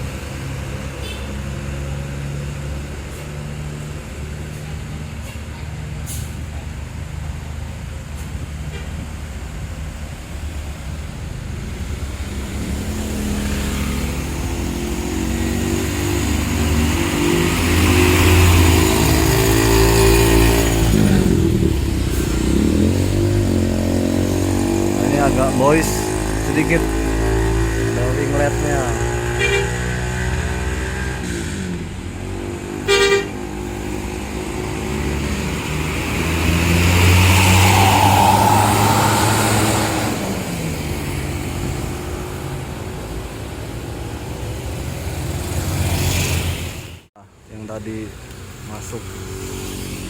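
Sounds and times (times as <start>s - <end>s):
bus driving past: 0.0s - 47.1s
diesel bus engines idling: 2.2s - 12.5s.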